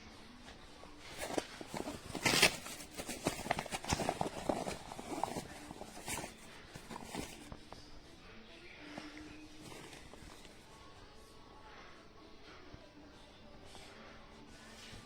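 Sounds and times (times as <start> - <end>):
rustling: 0.4 - 11.3.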